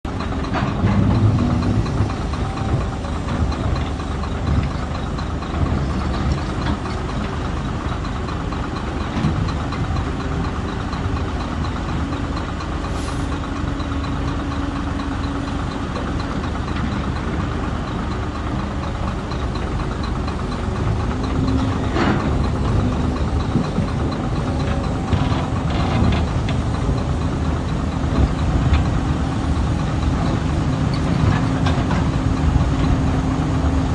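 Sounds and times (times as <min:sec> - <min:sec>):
diesel engine running: 0:00.1 - 0:33.9.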